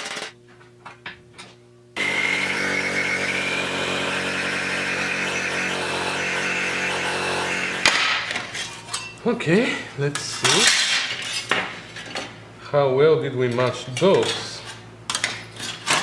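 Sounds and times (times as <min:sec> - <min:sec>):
power tool motor whining: 0:02.0 - 0:08.5.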